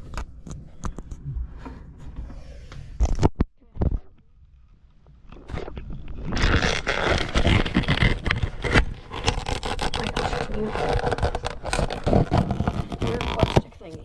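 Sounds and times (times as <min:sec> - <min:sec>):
plastic container handling noise: 0:06.1 - 0:14.0.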